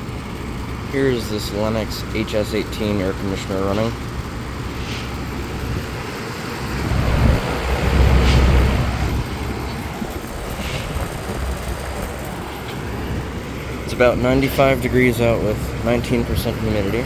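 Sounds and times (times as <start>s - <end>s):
air conditioner unit running: 0.0s - 17.0s
low rumble: 3.9s - 14.8s.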